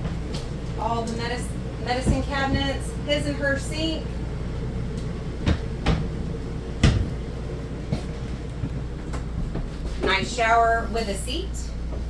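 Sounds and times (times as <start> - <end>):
steady low hum: 0.0 - 12.0
cabinet door knocks and clicks: 6.8 - 7.1.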